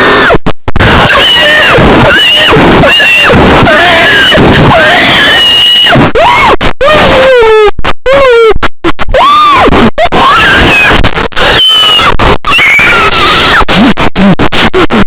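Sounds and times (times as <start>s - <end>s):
distorted screaming-like sound: 0.0s - 7.4s, 9.0s - 15.0s
thick noise bed: 0.0s - 8.0s.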